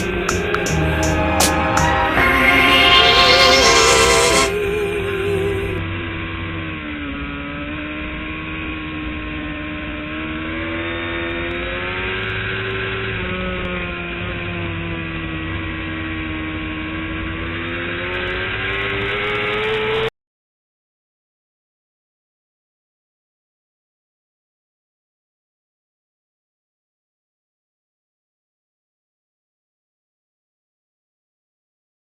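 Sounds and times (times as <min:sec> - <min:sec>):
race car engine at high revs: 0:00.0 - 0:20.1.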